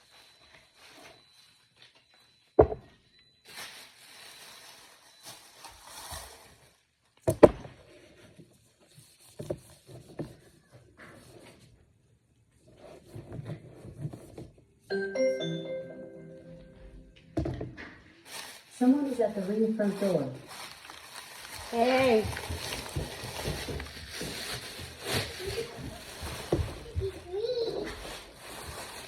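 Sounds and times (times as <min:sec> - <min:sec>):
groceries knocking on a counter: 0:22.0 - 0:27.1.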